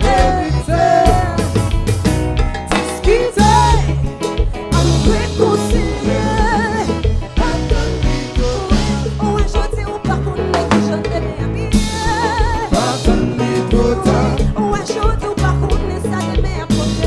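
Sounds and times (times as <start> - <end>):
drum kit: 0.0 - 17.0
electric bass: 0.0 - 17.0
guitar: 0.0 - 17.0
person singing: 2.8 - 4.1, 4.7 - 15.9.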